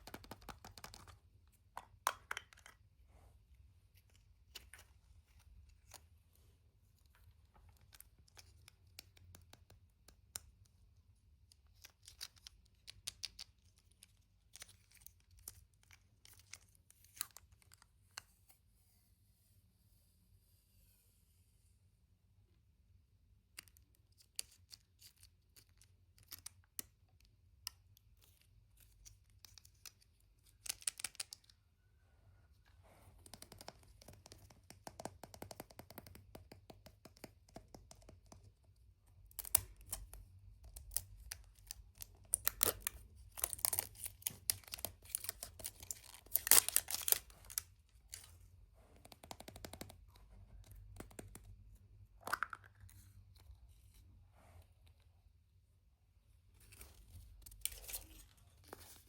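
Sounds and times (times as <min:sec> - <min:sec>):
packaging clicks and taps: 0:00.0 - 0:01.2, 0:01.8 - 0:02.8
packaging crinkling and tearing: 0:39.4 - 0:48.3.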